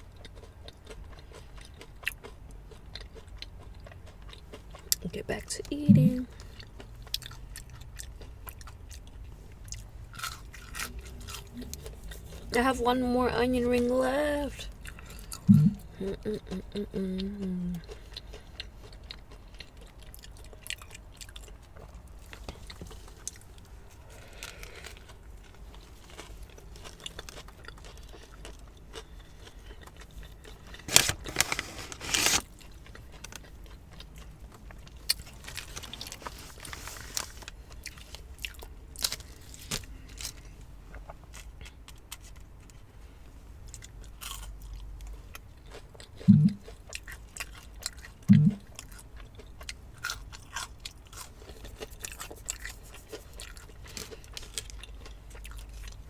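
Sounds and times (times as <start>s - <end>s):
mouth sounds: 5.0s - 6.3s, 15.4s - 17.8s, 46.2s - 46.6s, 48.3s - 48.7s
crunching onion ring: 6.2s - 12.6s, 17.4s - 42.8s, 43.6s - 56.0s
short low sound: 15.5s - 15.8s, 46.3s - 46.6s, 48.3s - 48.6s.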